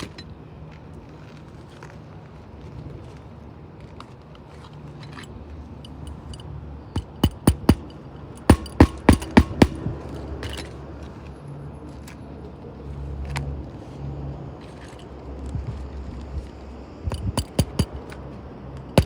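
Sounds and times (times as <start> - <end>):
light clicks and scraping: 0.0 - 8.5, 9.9 - 19.0
hammer driving nails: 7.0 - 9.9, 17.1 - 18.2.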